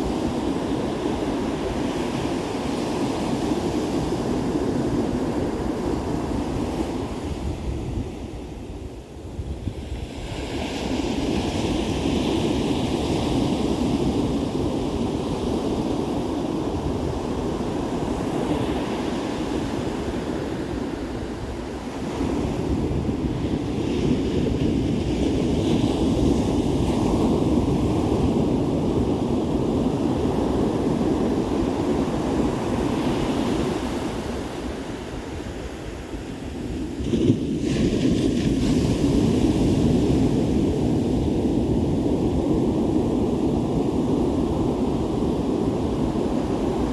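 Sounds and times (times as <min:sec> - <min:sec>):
wind buffeting microphone: 0:00.0 - 0:46.9
ocean surf breaking: 0:10.6 - 0:46.9.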